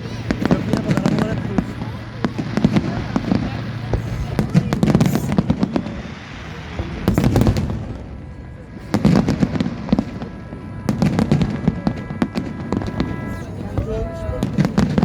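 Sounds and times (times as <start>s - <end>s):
fireworks crackling bangs: 0.0s - 15.0s.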